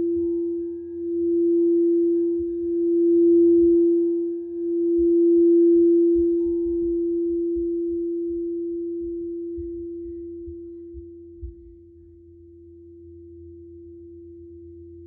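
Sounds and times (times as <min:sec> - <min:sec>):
singing bowl ringing: 0:00.0 - 0:15.0
footsteps thumping upstairs: 0:09.6 - 0:12.0.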